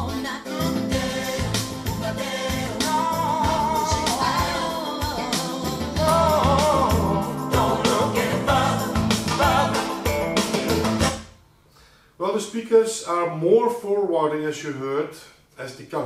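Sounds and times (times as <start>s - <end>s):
man singing soul song: 0.0s - 10.9s
drums and bass: 0.0s - 11.3s.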